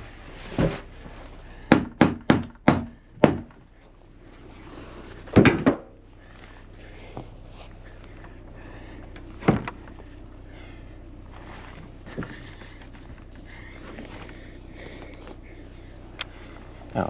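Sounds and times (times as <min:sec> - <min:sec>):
wooden panels knocking: 0:01.7 - 0:03.6.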